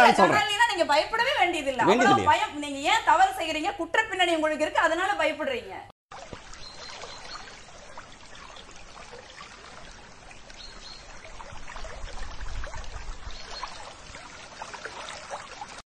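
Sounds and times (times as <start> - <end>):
water trickling and bubbling: 6.1 - 15.8.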